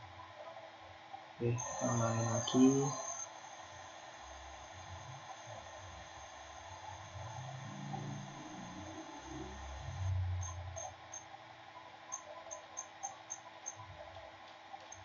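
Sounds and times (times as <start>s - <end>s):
lathe motor hum: 1.6s - 10.4s.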